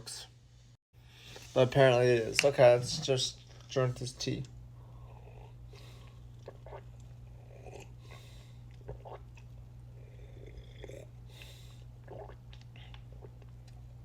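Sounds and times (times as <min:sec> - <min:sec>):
person swallowing: 0:06.4 - 0:06.9, 0:08.7 - 0:11.2, 0:12.0 - 0:13.4.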